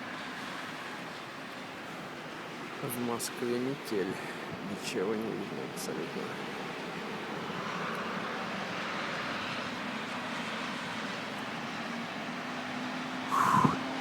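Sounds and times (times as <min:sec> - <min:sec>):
city traffic: 0:00.0 - 0:14.0
blizzard wind rushing: 0:13.2 - 0:14.0.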